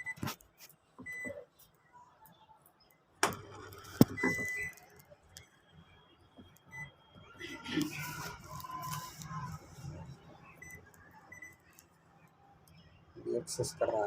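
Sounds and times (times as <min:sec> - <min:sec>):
washing machine panel beeping: 0:00.0 - 0:00.2, 0:01.0 - 0:01.4, 0:03.3 - 0:04.8.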